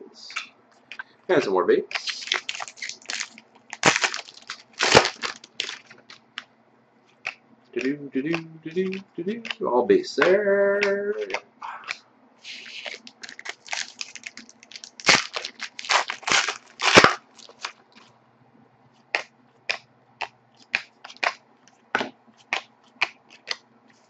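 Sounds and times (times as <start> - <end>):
wrapper tearing and crinkling: 1.9 - 6.2, 12.8 - 18.1
cards being flicked through: 7.2 - 14.8.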